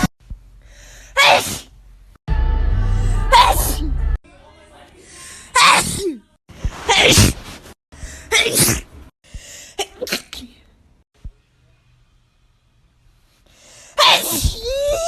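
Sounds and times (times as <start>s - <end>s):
person sneezing: 1.2s - 1.7s, 6.8s - 8.9s, 14.0s - 15.0s.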